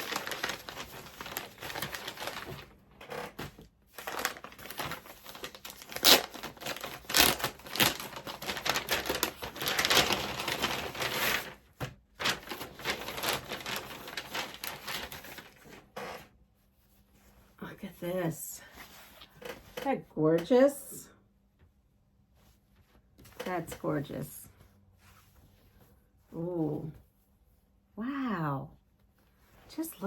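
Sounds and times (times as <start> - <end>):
envelope crinkling and rustling: 0.0 - 16.3.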